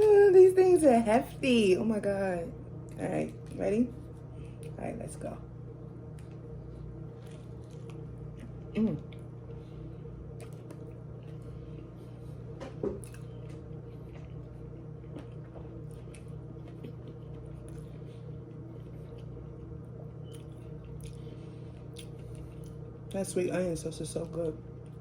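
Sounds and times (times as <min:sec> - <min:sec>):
steady low hum: 0:00.0 - 0:25.0
wet chewing and mouth clicks: 0:07.1 - 0:09.6, 0:10.3 - 0:11.9, 0:13.0 - 0:22.9.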